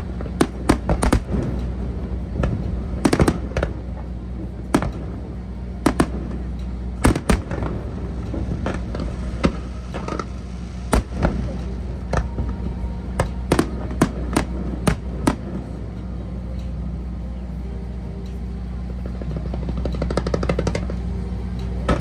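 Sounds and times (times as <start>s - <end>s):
fireworks bangs: 0.0s - 15.8s
steady low rumble: 0.0s - 22.0s.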